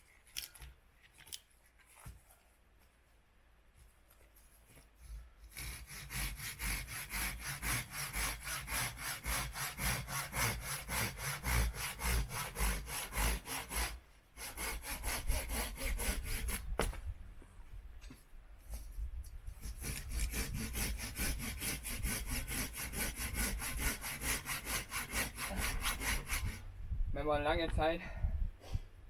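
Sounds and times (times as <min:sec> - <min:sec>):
hand saw cutting wood: 0:05.4 - 0:16.8, 0:19.6 - 0:26.7.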